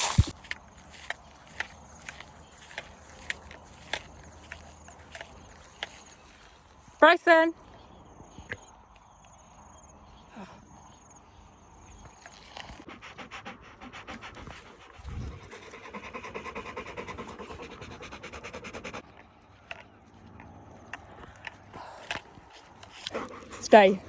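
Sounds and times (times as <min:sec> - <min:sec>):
dog panting: 0:12.6 - 0:19.9, 0:22.9 - 0:24.0.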